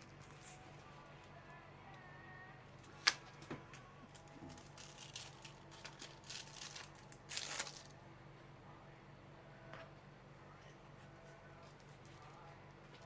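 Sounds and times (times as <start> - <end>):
low steady hum: 0.0 - 13.0
materials rustling and crinkling: 2.8 - 7.9.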